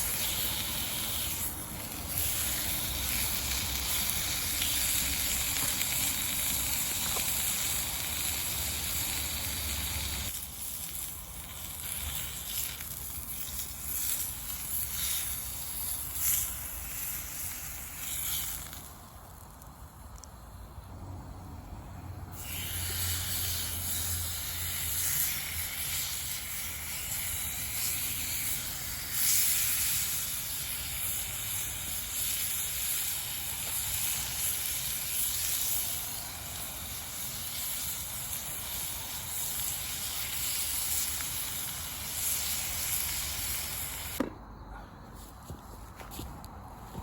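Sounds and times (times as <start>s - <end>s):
steak sizzling in a pan: 0.0s - 18.9s, 22.4s - 44.2s.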